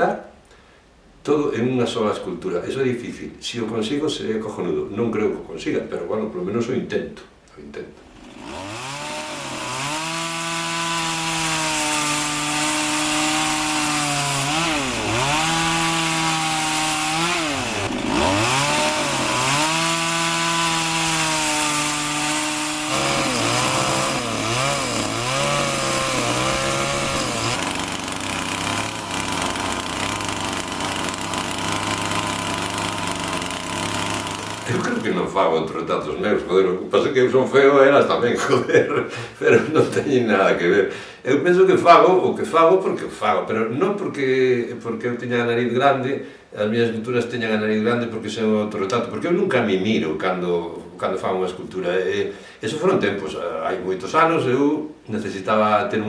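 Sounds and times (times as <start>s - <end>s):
chainsaw cutting wood: 8.0s - 35.3s.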